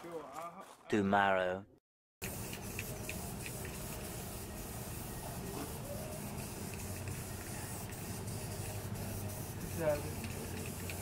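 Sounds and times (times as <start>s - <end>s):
spray paint hissing: 2.2s - 11.0s.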